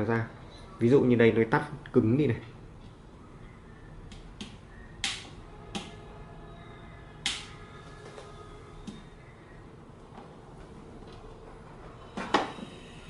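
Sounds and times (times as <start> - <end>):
sharp clicks of switches: 4.1 - 6.0, 7.2 - 7.6.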